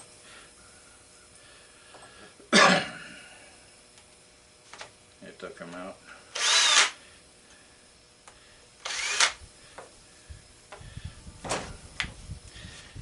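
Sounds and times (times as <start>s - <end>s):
cordless drill spinning: 6.3s - 7.0s, 8.8s - 9.4s.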